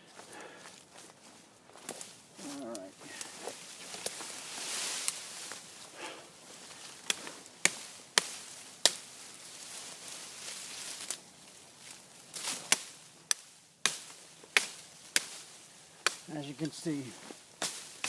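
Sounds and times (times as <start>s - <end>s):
knife chopping wood: 16.0s - 16.3s.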